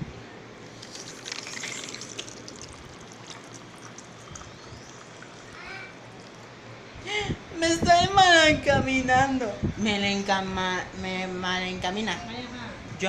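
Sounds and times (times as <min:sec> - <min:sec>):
drink being mixed: 0:00.6 - 0:06.5
liquid being poured: 0:00.6 - 0:06.6.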